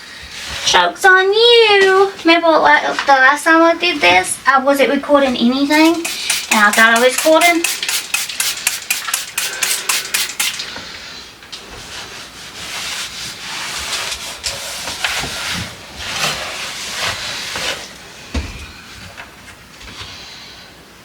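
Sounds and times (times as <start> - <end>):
rapid scrubbing: 5.8 - 10.6
uneven hissing: 5.8 - 10.7.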